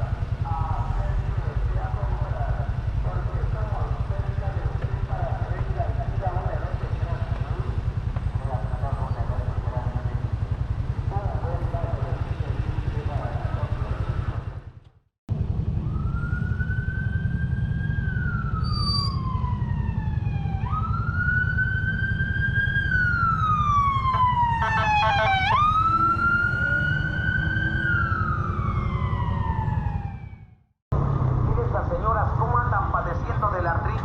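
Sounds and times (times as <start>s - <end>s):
emergency siren wailing: 0.0s - 14.7s, 15.3s - 31.5s
low engine rumble: 0.0s - 30.2s, 30.9s - 34.0s.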